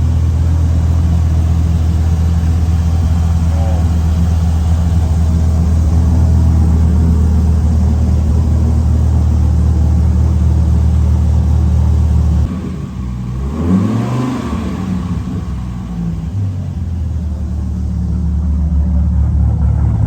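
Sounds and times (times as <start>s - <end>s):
engine running and revving: 0.0s - 20.0s.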